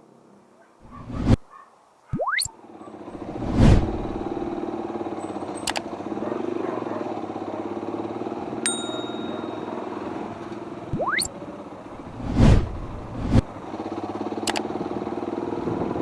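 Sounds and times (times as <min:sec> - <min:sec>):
motorcycle engine: 0:02.6 - 0:16.0
short metallic ding: 0:08.7 - 0:10.0.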